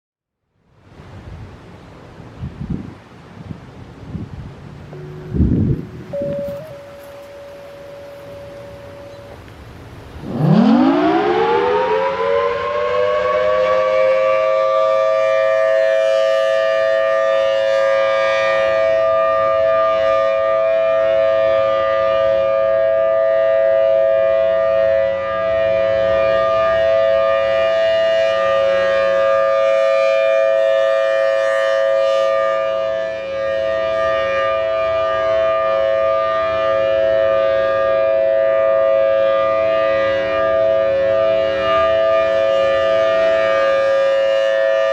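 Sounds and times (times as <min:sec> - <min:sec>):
civil defense siren two-note chord: 0:04.9 - 0:44.9.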